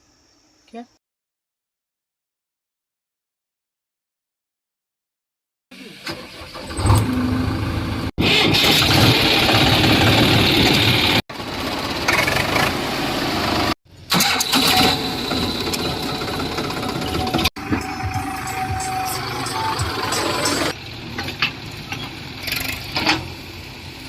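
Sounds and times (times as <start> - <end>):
heavy diesel engine running: 6.4 - 24.0.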